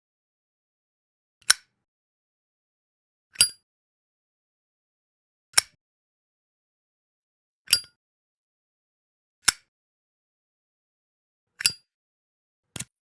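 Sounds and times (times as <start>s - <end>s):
lighter lid metallic clicks: 7.7s - 7.9s.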